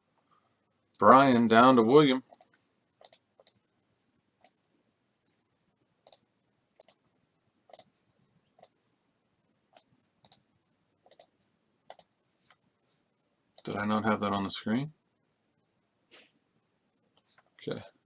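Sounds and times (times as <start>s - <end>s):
computer mouse clicks: 2.3s - 3.6s, 4.4s - 4.6s, 5.6s - 7.0s, 7.7s - 8.0s, 8.6s - 8.8s, 9.7s - 12.6s.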